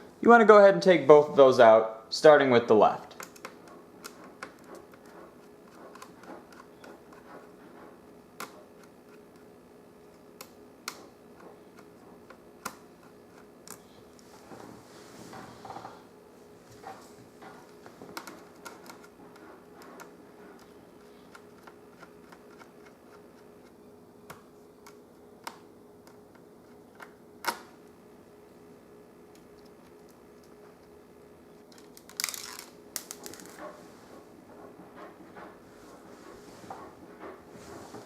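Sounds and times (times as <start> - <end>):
faint steady hum: 0.0 - 38.0
hands handling plastic parts: 31.6 - 33.7.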